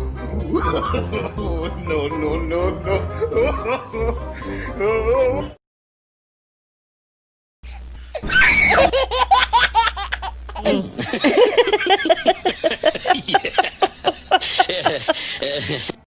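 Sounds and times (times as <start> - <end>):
person laughing heartily: 0.4 - 5.3, 8.2 - 16.0.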